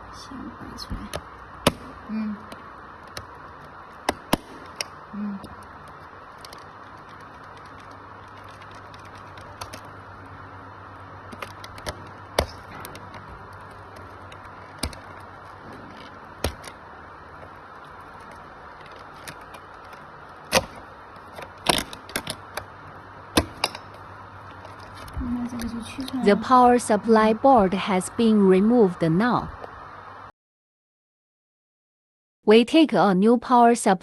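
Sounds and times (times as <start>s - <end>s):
circuit board being handled: 5.6s - 10.0s, 11.3s - 22.7s
cable connectors clicking: 11.3s - 16.8s, 17.4s - 22.7s.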